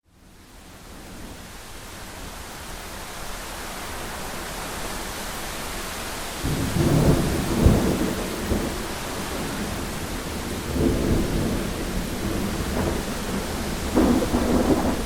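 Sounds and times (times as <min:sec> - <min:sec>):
heavy rain hiss: 0:00.1 - 0:15.0
thunder crack: 0:06.4 - 0:15.0
thunder rumbling: 0:06.4 - 0:15.0.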